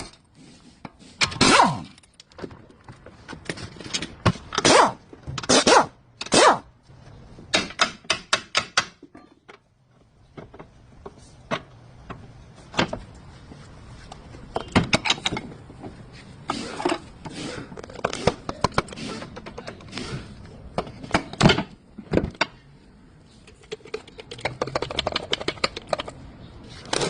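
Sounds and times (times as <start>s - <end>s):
sharp knocks and clicks: 7.5s - 9.7s, 23.5s - 26.2s.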